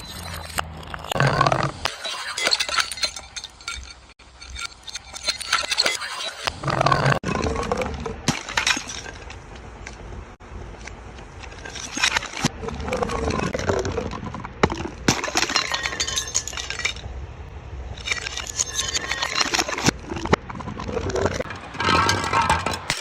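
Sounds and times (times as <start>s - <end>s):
glass shards clinking: 0.0s - 7.4s, 8.3s - 9.4s, 11.4s - 12.5s, 14.8s - 17.1s, 17.9s - 20.4s, 21.3s - 23.0s
glass bottles shattering: 0.0s - 7.5s, 8.2s - 9.2s, 11.5s - 12.5s, 14.6s - 17.1s, 17.9s - 20.4s, 21.2s - 23.0s.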